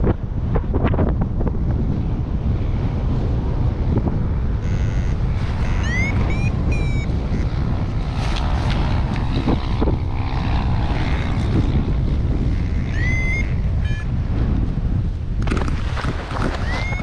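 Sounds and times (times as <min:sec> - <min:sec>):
wind buffeting microphone: 0:00.0 - 0:17.0
short high rising tones: 0:04.6 - 0:07.4, 0:12.8 - 0:14.1, 0:16.6 - 0:17.0.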